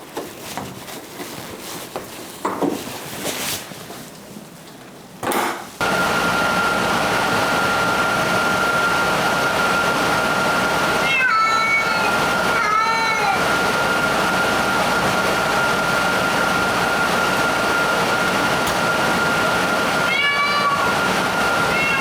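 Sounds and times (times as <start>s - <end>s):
pet dryer rushing and whining: 5.8s - 22.0s
cat meowing: 10.9s - 13.4s, 19.9s - 22.0s.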